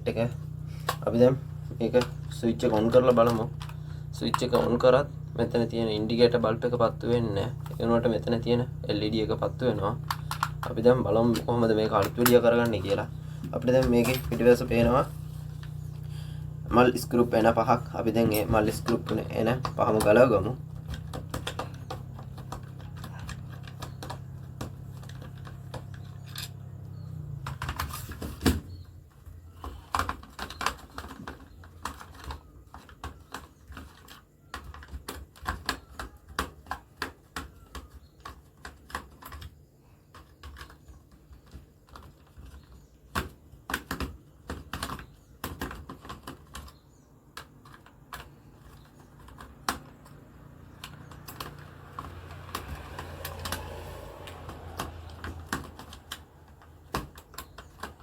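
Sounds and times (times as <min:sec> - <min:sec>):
low steady hum: 0:00.0 - 0:29.9.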